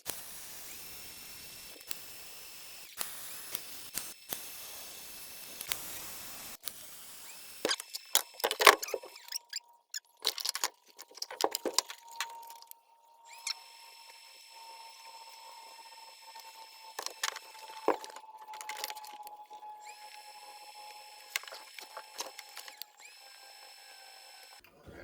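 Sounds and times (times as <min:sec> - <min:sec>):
welding arc hissing: 0:00.0 - 0:09.3.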